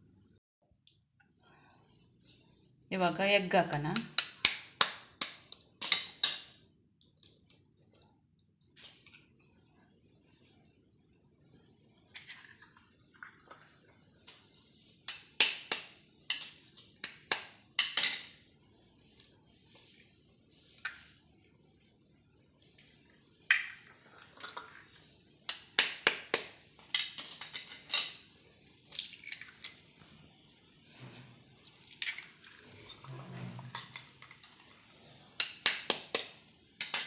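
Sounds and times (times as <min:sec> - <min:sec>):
faint scraping: 0:32.6 - 0:33.8.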